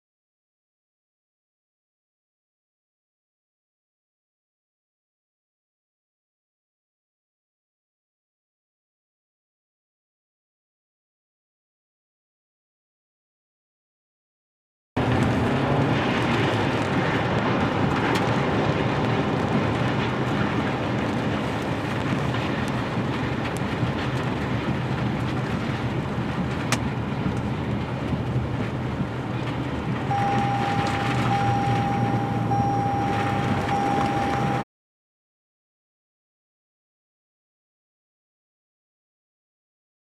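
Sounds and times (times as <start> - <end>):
low rumble: 15.0 - 34.6
wind roaring over microphone: 15.0 - 34.6
high-pitched tone: 30.1 - 34.6.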